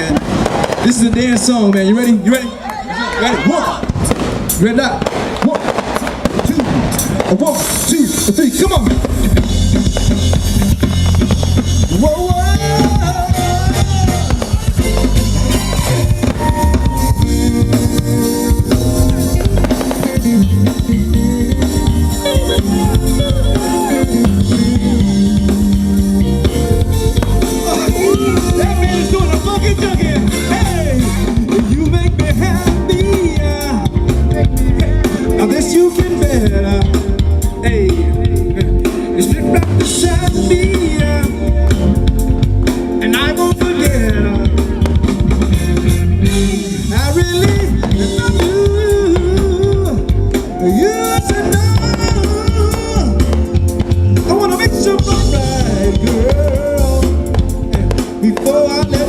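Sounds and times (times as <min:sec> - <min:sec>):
live band playing dance song: 0:00.0 - 0:59.0
person singing: 0:11.9 - 0:42.0, 0:42.9 - 0:59.0.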